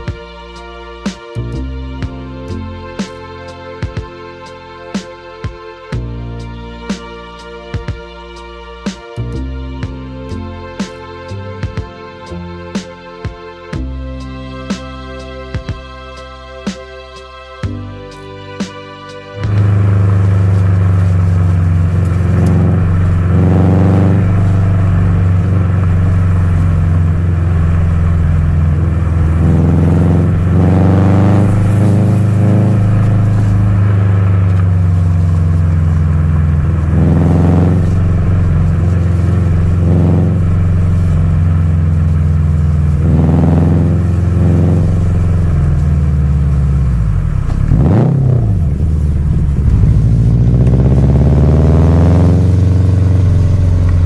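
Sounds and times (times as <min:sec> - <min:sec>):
car engine and exhaust rumbling: 0:00.0 - 0:54.0.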